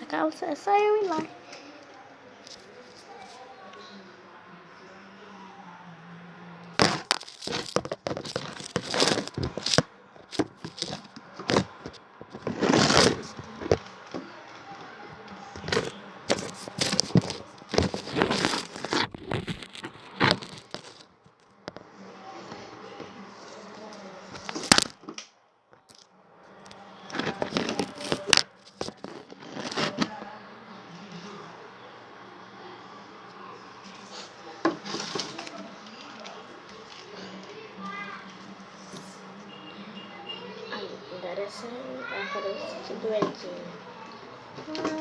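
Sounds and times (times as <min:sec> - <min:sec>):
toys rustling and clicking: 0:06.8 - 0:14.3, 0:15.2 - 0:21.8, 0:26.7 - 0:30.3.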